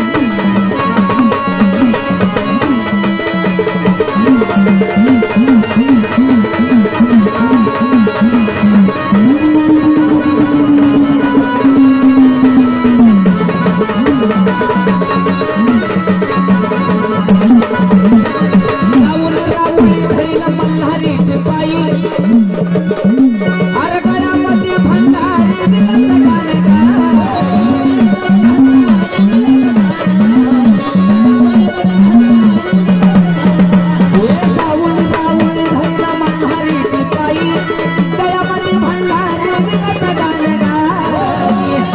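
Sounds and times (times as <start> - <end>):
drums keeping steady rhythm: 0.0 - 41.9
repeating folk melody: 0.0 - 41.9.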